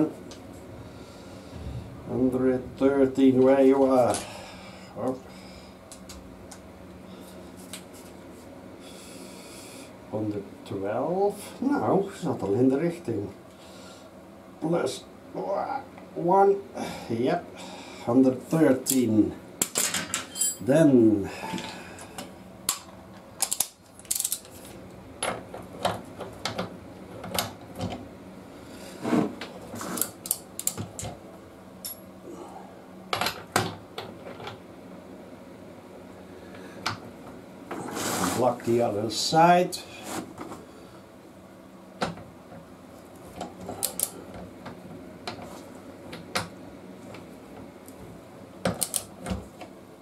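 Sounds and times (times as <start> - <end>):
tools and metal parts clicking: 19.6 - 20.6, 23.4 - 24.5.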